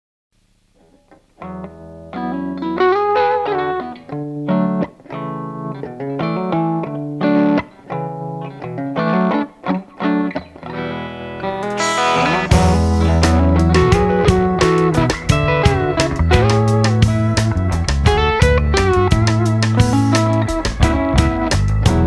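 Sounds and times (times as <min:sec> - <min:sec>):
distorted electric guitar riff: 0:00.8 - 0:22.0
rock band with bass: 0:06.2 - 0:22.0
cymbal crash: 0:11.7 - 0:13.5.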